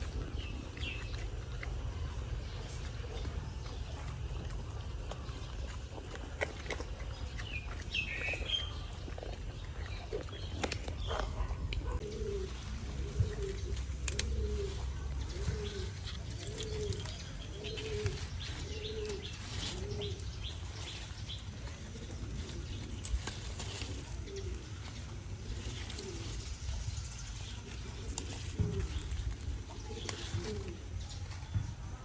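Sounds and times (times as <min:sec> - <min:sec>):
steady low rumble: 0:00.0 - 0:32.0
cooing calls: 0:07.1 - 0:26.7, 0:27.6 - 0:31.1.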